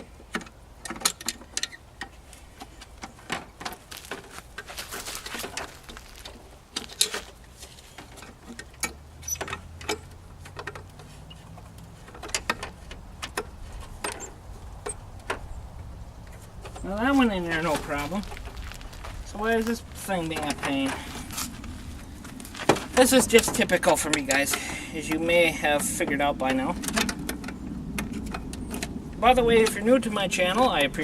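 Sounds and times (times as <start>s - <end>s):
plastic parts clicking and knocking: 0.3s - 7.4s, 8.0s - 15.5s.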